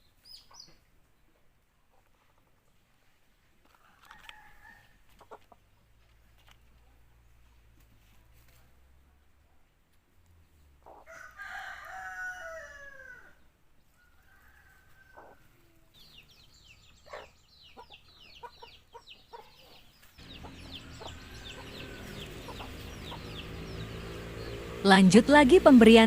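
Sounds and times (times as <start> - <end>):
background noise: 0.0 - 26.0
rooster crowing: 3.8 - 5.0, 11.0 - 13.4, 14.0 - 15.5, 20.2 - 23.8.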